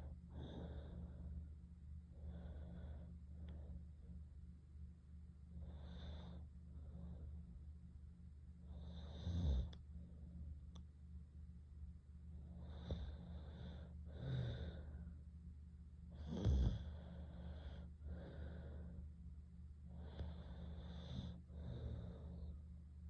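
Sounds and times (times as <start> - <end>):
girl snoring and breathing heavily: 0.0 - 1.4, 5.6 - 7.2, 8.7 - 9.8, 12.5 - 15.0, 16.1 - 19.0, 19.9 - 22.6
steady low hum: 0.0 - 23.0
snort: 8.8 - 9.8, 16.2 - 18.7, 20.0 - 22.4.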